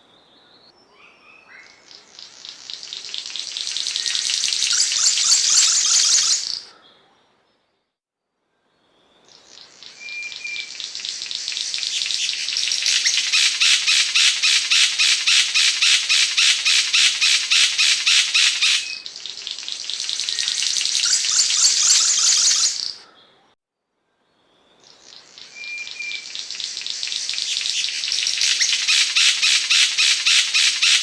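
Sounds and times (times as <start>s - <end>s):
bird harsh chattering call: 2.2s - 6.6s, 10.1s - 23.0s, 25.5s - 31.0s.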